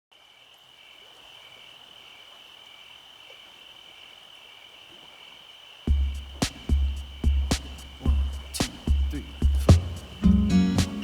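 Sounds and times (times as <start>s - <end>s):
insect chorus buzzing: 0.1s - 11.0s
music with heavy bass beat: 5.9s - 11.0s.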